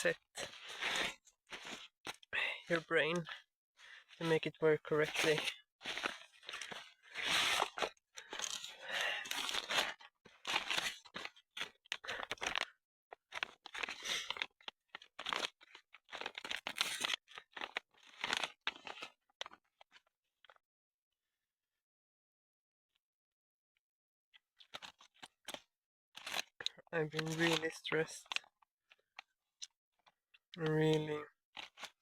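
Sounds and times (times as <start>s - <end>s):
footsteps on dry leaves and twigs: 5.8s - 9.9s.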